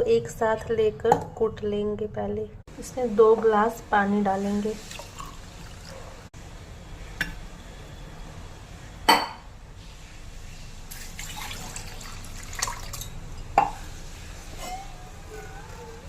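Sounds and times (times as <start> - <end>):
water pouring into a pot: 4.7 - 6.0, 10.9 - 13.2.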